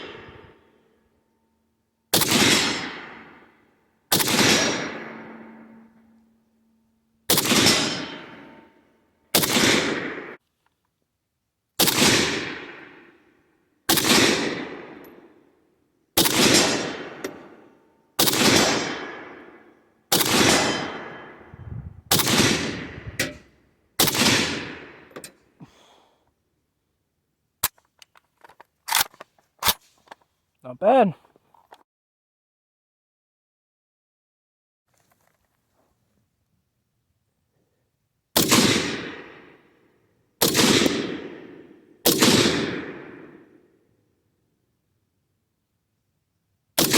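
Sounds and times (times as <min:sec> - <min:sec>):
rifle shots with echo: 0:00.0 - 0:00.6, 0:02.1 - 0:10.4, 0:11.8 - 0:13.2, 0:13.9 - 0:15.5, 0:16.2 - 0:25.2, 0:38.4 - 0:39.7, 0:40.4 - 0:43.8.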